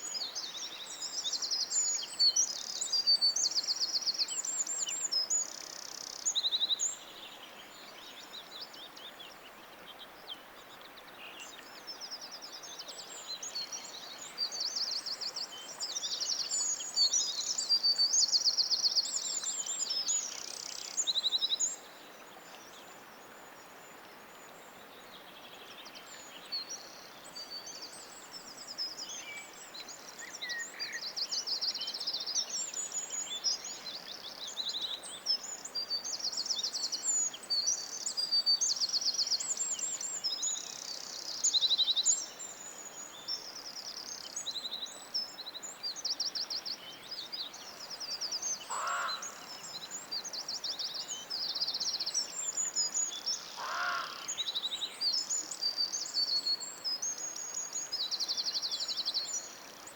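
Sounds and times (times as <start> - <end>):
songbirds singing in chorus: 0.0 - 59.9.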